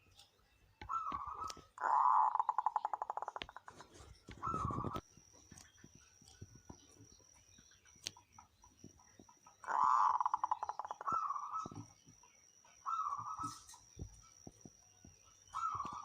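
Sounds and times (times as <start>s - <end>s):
dove cooing: 0.8s - 5.0s, 9.6s - 11.9s, 12.7s - 14.1s, 15.5s - 16.0s.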